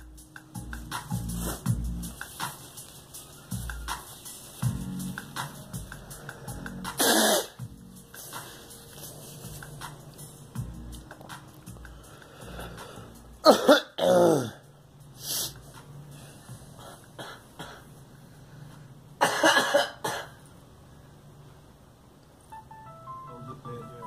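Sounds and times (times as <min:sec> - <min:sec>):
girl coughing: 0:07.0 - 0:07.6, 0:13.4 - 0:14.6, 0:19.2 - 0:20.4.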